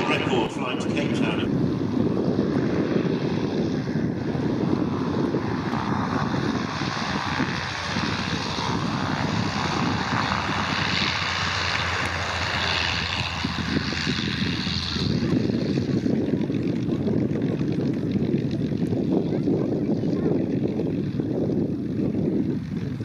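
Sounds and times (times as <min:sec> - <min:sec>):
propeller aircraft engine: 0:00.0 - 0:23.0.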